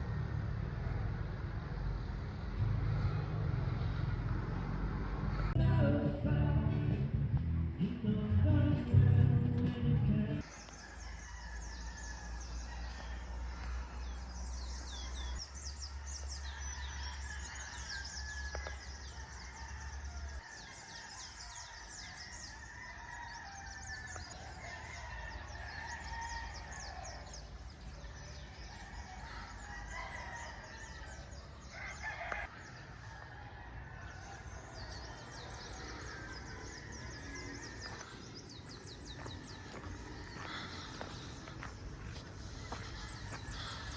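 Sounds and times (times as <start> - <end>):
birds chirping: 10.4 - 43.9
rooster crowing: 10.6 - 13.7, 16.1 - 27.4, 28.3 - 43.9.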